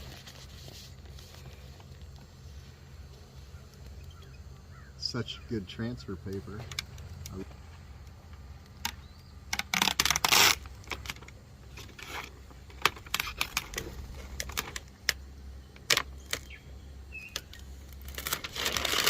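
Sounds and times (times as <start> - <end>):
transfer paper crinkling: 0.0 - 2.8, 17.5 - 19.0
steady low hum: 0.0 - 19.0.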